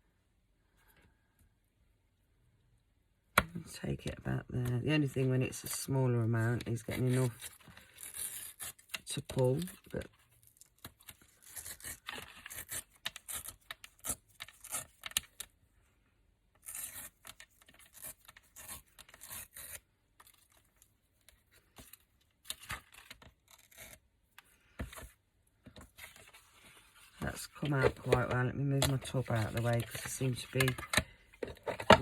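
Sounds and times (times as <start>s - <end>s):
paper tearing: 11.3s - 15.2s, 16.6s - 20.6s.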